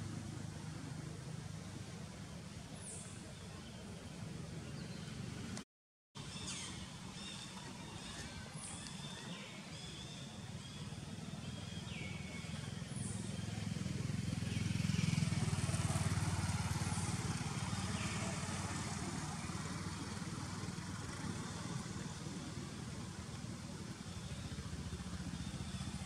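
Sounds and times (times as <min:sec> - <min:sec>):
vehicle passing on road: 0:12.5 - 0:26.0.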